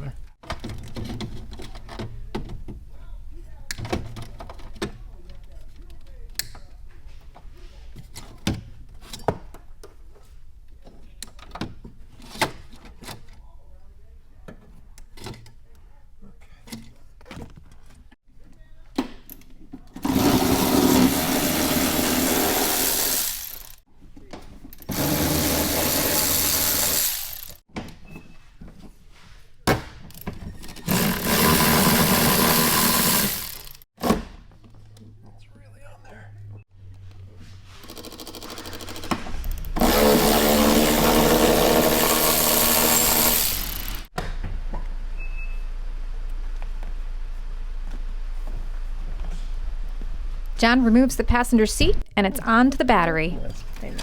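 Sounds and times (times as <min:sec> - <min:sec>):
cordless power driver running: 0:20.1 - 0:23.8, 0:24.9 - 0:27.6, 0:30.9 - 0:33.8, 0:38.5 - 0:44.1.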